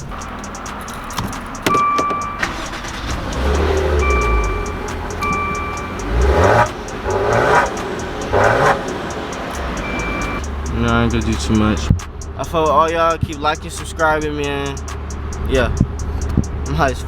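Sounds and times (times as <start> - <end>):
car engine revving: 0.0 - 17.0
short electronic beep: 4.0 - 5.9.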